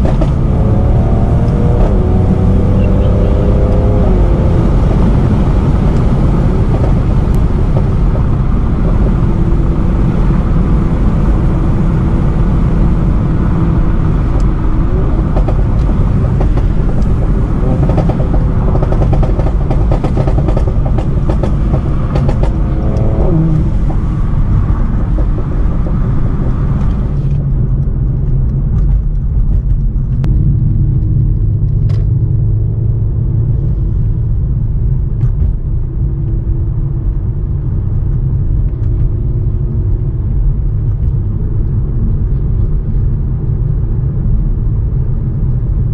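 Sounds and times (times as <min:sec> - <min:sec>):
car engine revving: 0:00.0 - 0:27.4
exhaust crackles and pops: 0:00.0 - 0:45.9.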